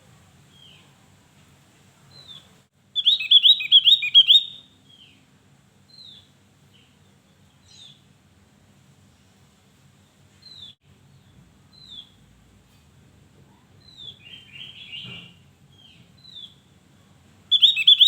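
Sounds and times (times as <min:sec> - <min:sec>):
bird chirping song: 0:00.5 - 0:01.0, 0:02.1 - 0:08.1, 0:09.0 - 0:12.3, 0:13.5 - 0:16.7, 0:17.5 - 0:18.0
soft bird call notes: 0:02.2 - 0:05.2, 0:17.5 - 0:18.0.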